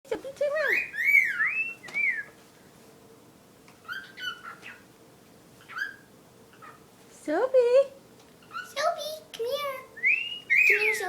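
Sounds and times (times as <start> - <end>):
cockatiel whistling: 0.6 - 2.4, 3.8 - 4.8, 5.6 - 6.8, 10.0 - 11.0
soft bird chirps: 0.6 - 2.4, 3.8 - 4.9, 5.6 - 6.9, 10.0 - 11.0.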